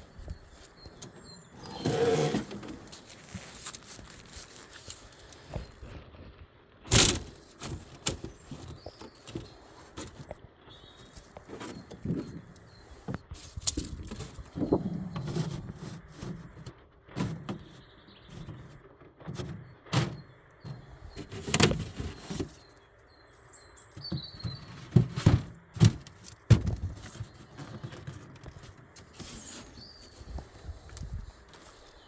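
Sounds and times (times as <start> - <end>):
small birds chirping: 0.0 - 6.2, 7.3 - 15.5, 17.5 - 25.1, 26.4 - 32.0
wooden parts knocking and scraping: 11.0 - 22.7, 24.0 - 30.4.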